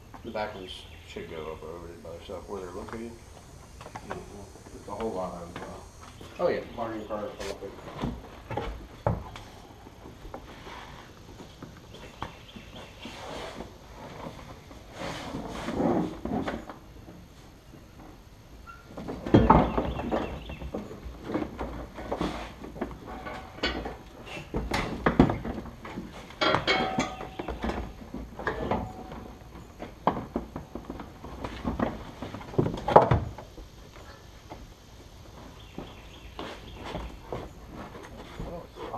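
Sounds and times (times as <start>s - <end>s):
metal knocks clunks and rattles: 18.7s - 33.5s.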